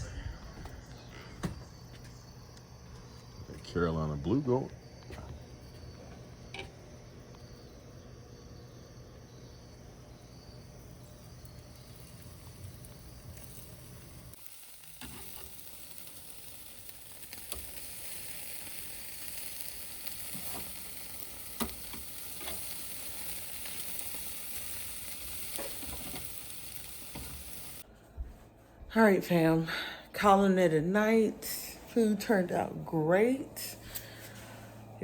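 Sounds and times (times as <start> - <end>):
food sizzling: 9.2 - 27.8.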